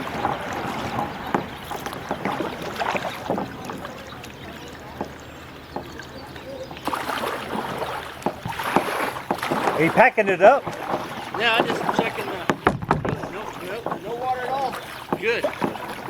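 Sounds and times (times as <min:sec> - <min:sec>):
knocks on kayak: 0:00.0 - 0:03.8, 0:08.2 - 0:16.0
water splashing and dripping: 0:00.0 - 0:16.0.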